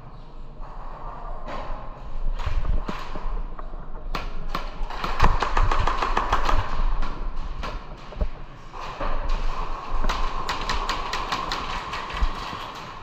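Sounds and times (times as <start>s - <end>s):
steady background hum: 0.0s - 13.0s
rapid full-auto burst: 4.9s - 6.8s.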